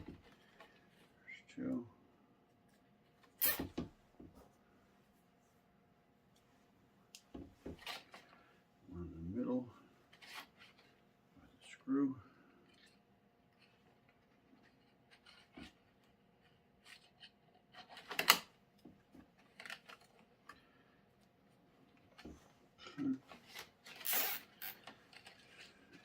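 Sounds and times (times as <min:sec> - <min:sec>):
zip tie rasping: 0:03.4 - 0:03.7, 0:24.0 - 0:24.9.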